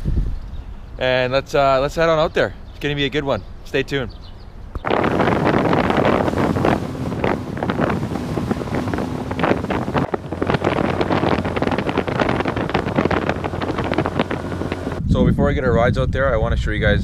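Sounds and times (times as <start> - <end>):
wind buffeting microphone: 0.0 - 1.0, 4.2 - 17.0
boat motor running: 4.7 - 15.0.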